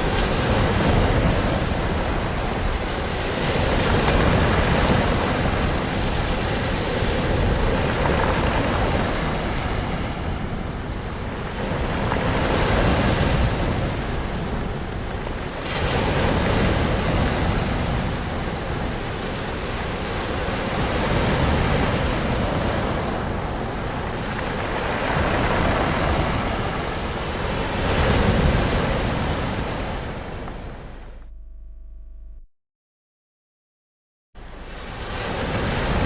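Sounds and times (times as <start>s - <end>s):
waves breaking on shore: 0.0s - 31.1s, 34.4s - 36.0s.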